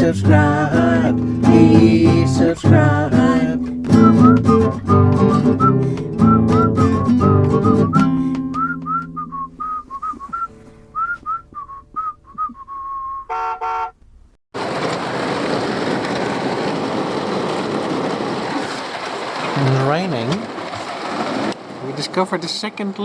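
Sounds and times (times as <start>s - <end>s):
acoustic guitar: 0.0s - 14.1s
whistled tune: 3.9s - 13.3s
heavy rain hissing: 14.6s - 23.0s.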